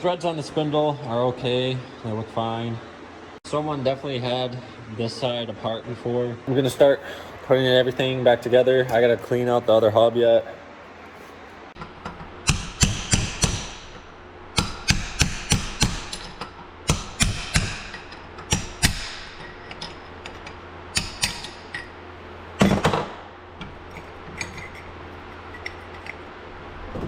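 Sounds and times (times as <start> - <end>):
hammer striking metal: 12.4 - 14.0, 14.6 - 22.0.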